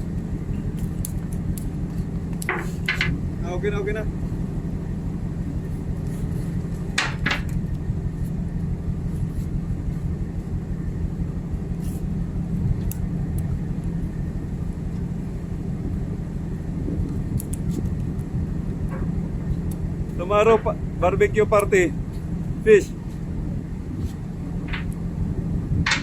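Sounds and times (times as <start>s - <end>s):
ship machinery drone: 0.0s - 26.0s.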